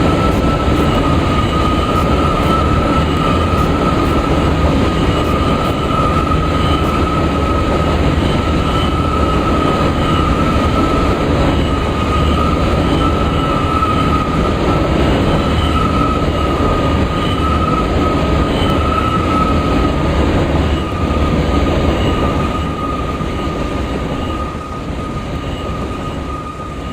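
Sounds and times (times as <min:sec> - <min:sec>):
high wheel squeal: 0:00.0 - 0:26.9
train wheels rumbling on rail: 0:00.0 - 0:26.9.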